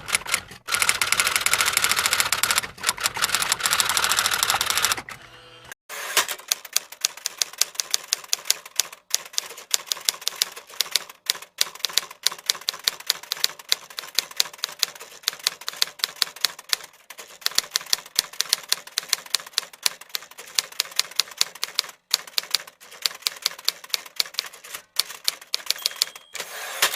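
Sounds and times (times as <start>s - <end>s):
typewriter keys clacking: 6.4s - 26.9s.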